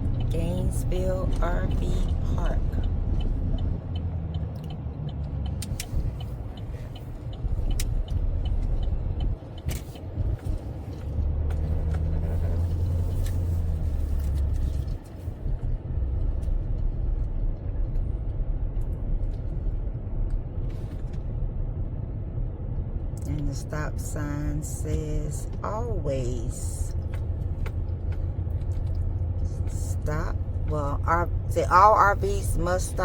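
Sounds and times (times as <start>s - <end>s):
regular ticking: 0.0s - 12.0s
road noise: 0.0s - 33.0s
vehicle engine rumble: 0.0s - 33.0s.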